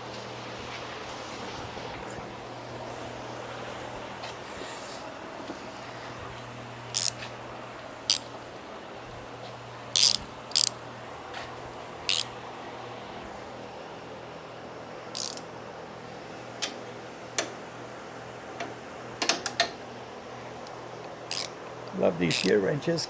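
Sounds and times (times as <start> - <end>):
steady low hum: 0.0 - 23.0
ratchet wrench clicking: 6.9 - 7.2, 8.1 - 8.3, 10.0 - 10.8, 12.1 - 12.3, 15.2 - 15.5, 21.3 - 21.6, 22.3 - 22.6.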